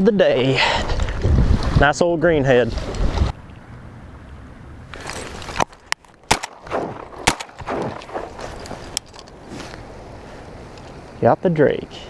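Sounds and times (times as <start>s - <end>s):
soft rustling: 8.0s - 11.1s.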